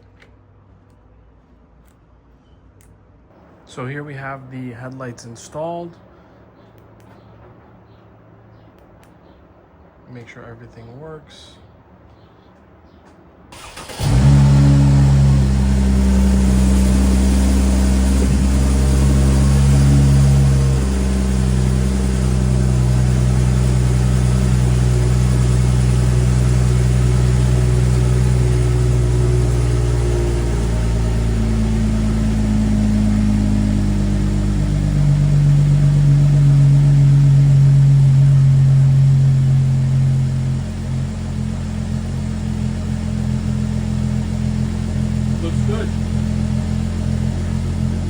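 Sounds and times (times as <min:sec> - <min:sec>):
car engine starting and idling: 0:13.5 - 0:48.0.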